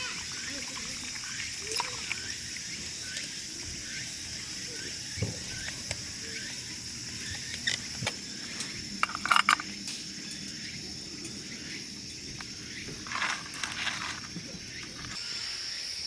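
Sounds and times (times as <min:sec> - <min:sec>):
insects chirring: 0:00.0 - 0:16.0
clatter of handled object: 0:13.0 - 0:15.1.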